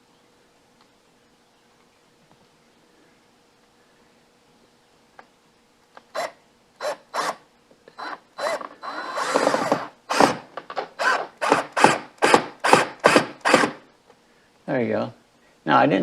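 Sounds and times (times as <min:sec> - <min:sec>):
cordless drill driving a screw: 0:06.1 - 0:07.4, 0:08.0 - 0:10.4, 0:11.0 - 0:13.8.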